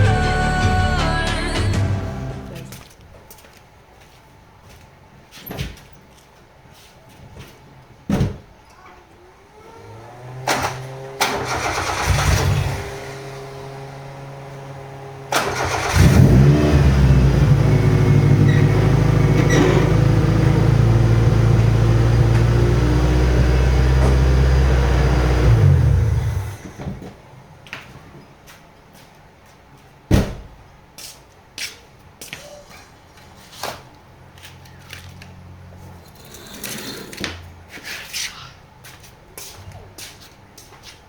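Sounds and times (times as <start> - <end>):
car engine cranking and starting: 9.9 - 26.9.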